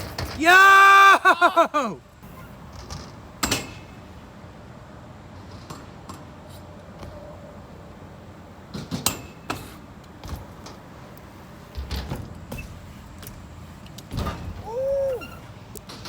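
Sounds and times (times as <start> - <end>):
bike clacking on ramp: 2.3 - 3.9, 11.7 - 16.0.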